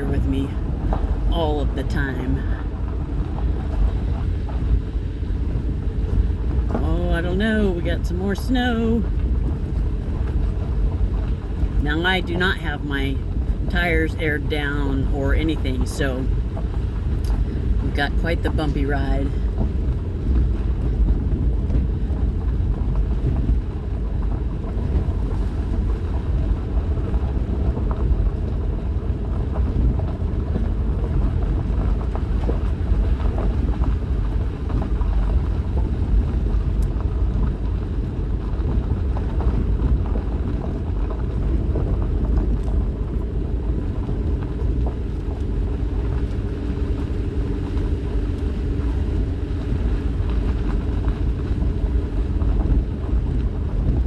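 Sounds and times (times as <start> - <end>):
engine and tyre rumble: 0.0 - 54.0.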